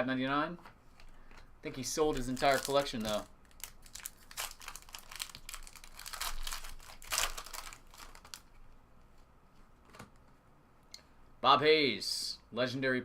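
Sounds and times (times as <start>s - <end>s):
foil wrapper crinkling: 2.0s - 8.5s.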